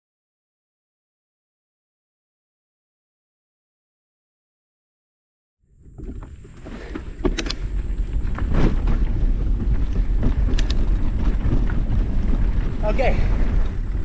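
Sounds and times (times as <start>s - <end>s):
bike tyre rumble: 5.7s - 14.0s
bike clicks and rattles: 5.8s - 14.0s
wind on microphone: 5.8s - 14.0s.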